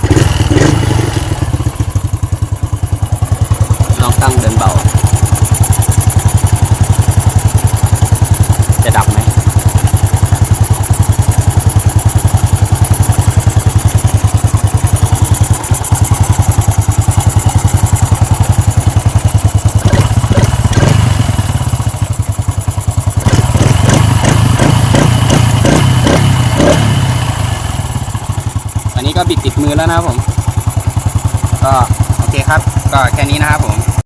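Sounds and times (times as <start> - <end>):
engine revving in short blips: 0.0 - 2.0, 19.8 - 21.7, 23.2 - 28.0
motorcycle engine idling: 0.0 - 34.0.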